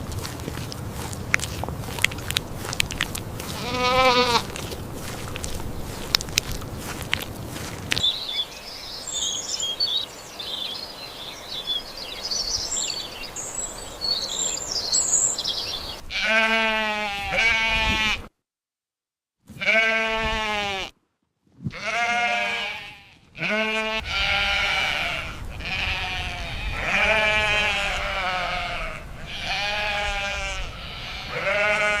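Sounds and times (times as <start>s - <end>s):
sheep bleating: 3.4s - 5.5s, 16.1s - 18.3s, 19.5s - 21.0s, 21.7s - 32.0s
high chirping: 7.9s - 16.0s.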